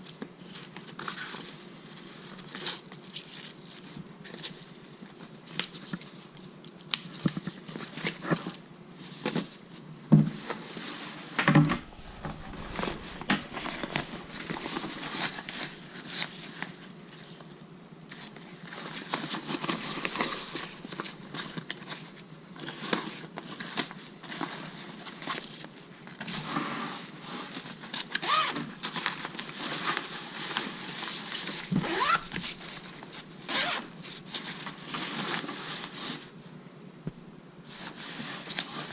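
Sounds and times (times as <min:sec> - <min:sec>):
fabric and packaging rustling: 0:10.4 - 0:17.5, 0:18.1 - 0:36.3
zippers pulled open and shut: 0:28.2 - 0:28.6, 0:31.7 - 0:32.8, 0:33.5 - 0:33.9.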